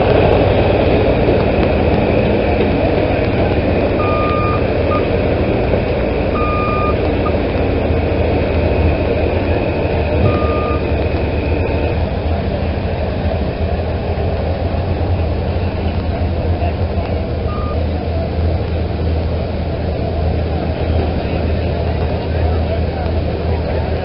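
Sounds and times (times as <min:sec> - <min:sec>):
heavy vehicle engines running: 0:00.0 - 0:24.0
backup alarm beeps: 0:04.0 - 0:05.2, 0:06.3 - 0:07.4, 0:09.5 - 0:11.8, 0:17.5 - 0:17.8.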